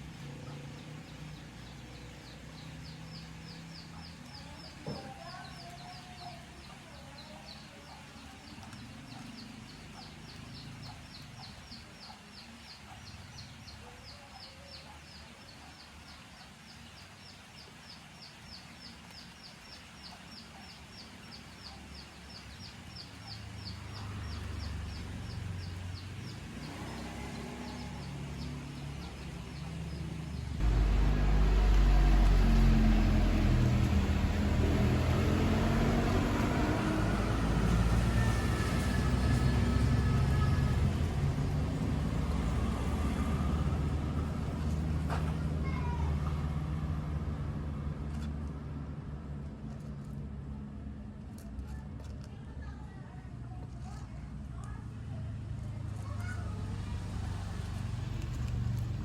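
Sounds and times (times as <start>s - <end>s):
low rumble: 30.4s - 45.0s.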